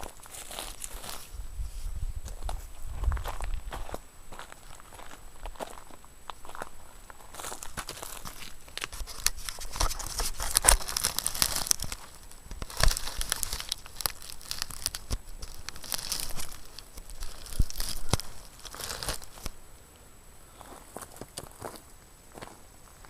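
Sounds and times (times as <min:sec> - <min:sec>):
dry crunching and crinkling rustle: 0:00.0 - 0:19.6.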